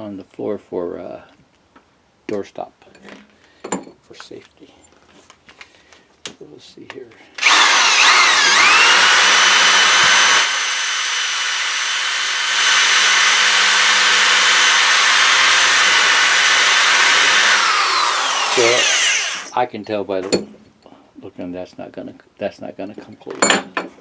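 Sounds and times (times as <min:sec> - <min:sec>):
power drill whining into wood: 0:07.4 - 0:19.6.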